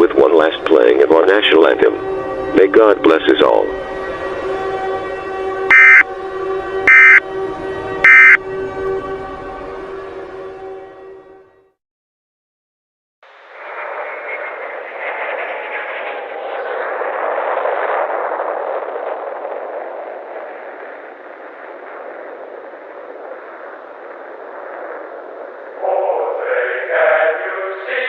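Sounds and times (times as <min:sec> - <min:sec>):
radio static hiss: 0:05.7 - 0:06.0, 0:06.9 - 0:07.2, 0:08.1 - 0:08.4.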